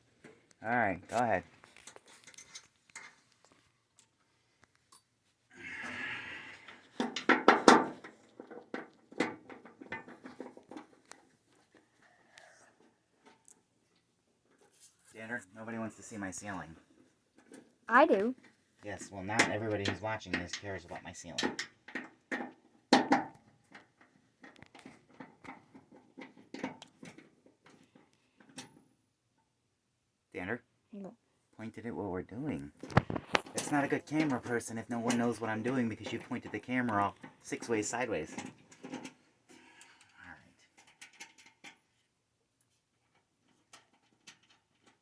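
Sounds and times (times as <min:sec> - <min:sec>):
handling clicks and knocks: 0:32.8 - 0:37.4.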